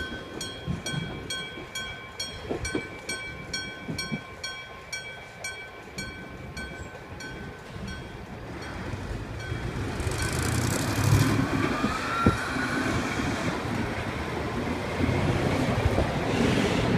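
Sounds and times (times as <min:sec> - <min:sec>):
rumble of passing vehicles: 0:07.7 - 0:16.9.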